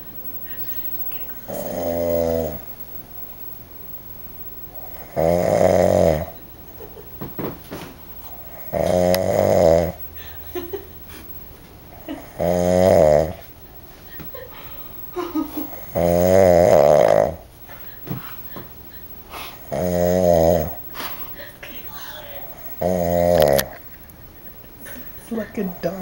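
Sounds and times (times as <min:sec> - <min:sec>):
man snoring loudly: 0:01.4 - 0:02.6, 0:04.8 - 0:06.4, 0:08.5 - 0:10.0, 0:12.2 - 0:13.4, 0:15.7 - 0:17.4, 0:19.5 - 0:20.8, 0:22.8 - 0:23.7.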